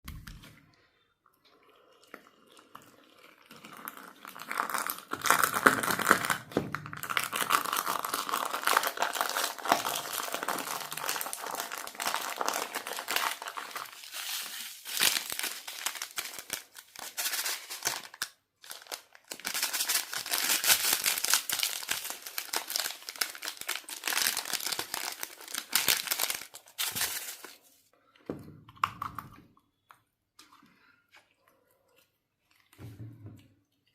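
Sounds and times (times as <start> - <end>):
slime crinkling and crackling: 3.3 - 27.6.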